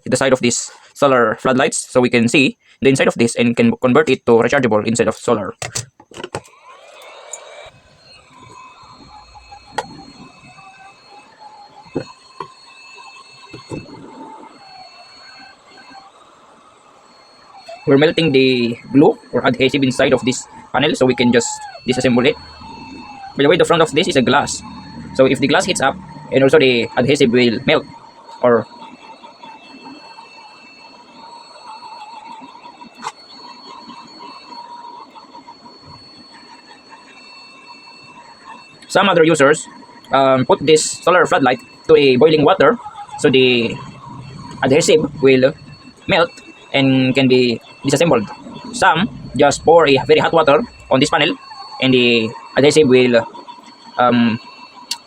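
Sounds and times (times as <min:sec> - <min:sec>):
faint high whine: 0:00.0 - 0:55.0
hot air blower whirring: 0:17.2 - 0:28.8.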